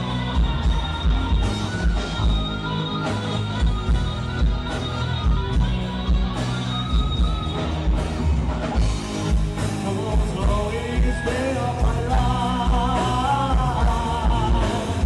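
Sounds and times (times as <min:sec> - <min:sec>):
heavy kick-drum beat: 0:00.0 - 0:15.0
rock band playing live: 0:00.0 - 0:15.0
person singing: 0:09.6 - 0:15.0.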